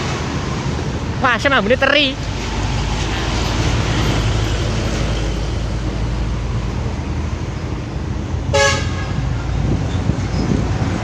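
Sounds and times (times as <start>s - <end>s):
bus engines rumbling: 0.0s - 11.0s
road traffic: 0.0s - 11.0s
bus horn toot: 8.5s - 9.4s.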